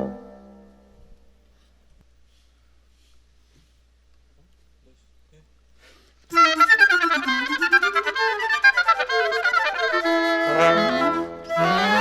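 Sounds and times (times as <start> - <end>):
woodwind quintet playing: 0.0 - 0.6, 6.3 - 12.0
lower instruments holding notes: 6.3 - 12.0
wind instrument fast detached notes: 6.3 - 12.0.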